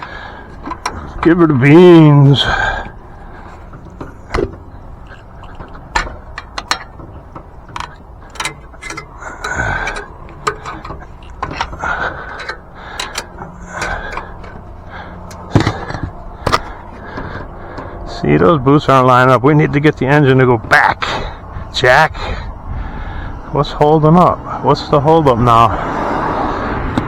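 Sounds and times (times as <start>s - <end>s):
jack clicking and knocking: 0.0s - 1.6s, 3.6s - 18.0s.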